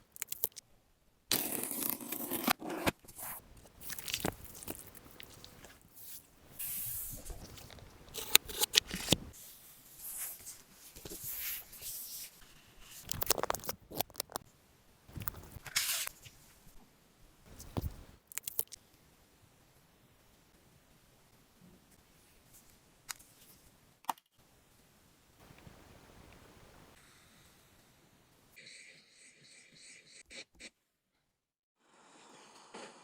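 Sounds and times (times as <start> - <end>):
packaging tearing and rustling: 3.2 - 6.2, 7.2 - 9.4, 13.0 - 14.4.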